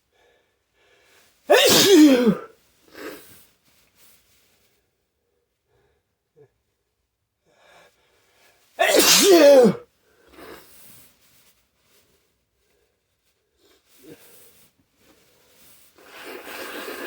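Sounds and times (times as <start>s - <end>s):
person sneezing: 1.5s - 3.2s, 8.8s - 9.8s, 16.0s - 17.0s.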